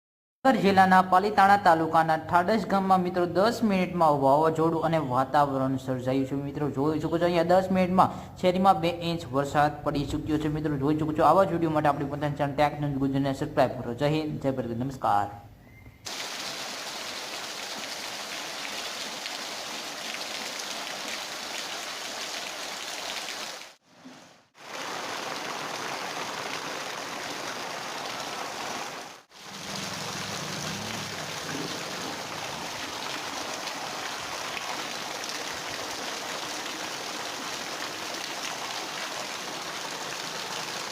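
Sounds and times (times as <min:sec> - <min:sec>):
heavy rain pouring: 0:16.1 - 0:23.8, 0:24.5 - 0:40.9.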